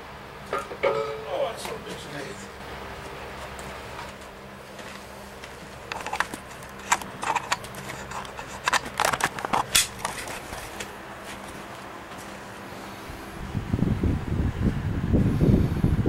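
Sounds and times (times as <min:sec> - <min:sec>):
faint steady hum: 0:00.0 - 0:16.0
metal engine parts clinking: 0:00.5 - 0:01.5, 0:05.9 - 0:10.6.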